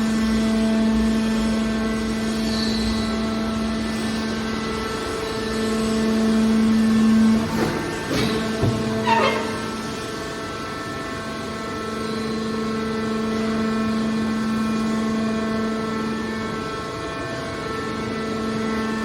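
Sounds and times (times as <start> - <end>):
can baler humming: 6.6 - 10.3
knocks and rattles: 7.3 - 10.0.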